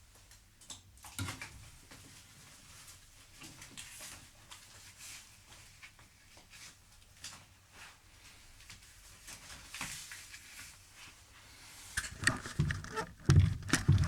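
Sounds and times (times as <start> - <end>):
small clicks of parts moved: 12.0 - 14.0.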